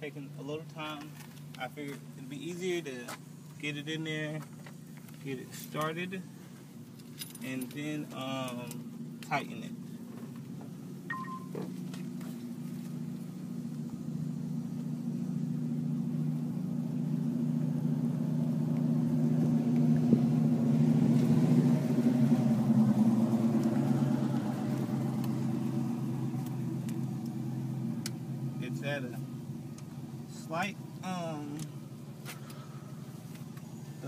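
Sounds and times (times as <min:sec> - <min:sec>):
motor engine running: 0:08.8 - 0:34.0.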